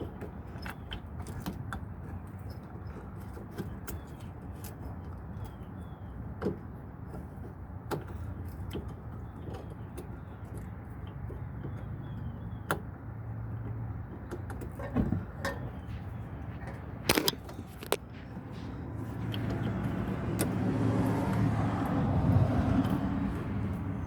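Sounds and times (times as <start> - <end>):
car parts clicking and knocking: 0.0 - 24.0
low rumble: 15.8 - 24.0.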